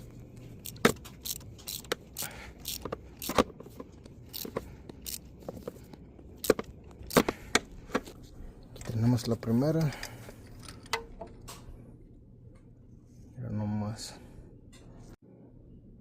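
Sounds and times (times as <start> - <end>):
hand tools clicking on metal: 0.6 - 5.3.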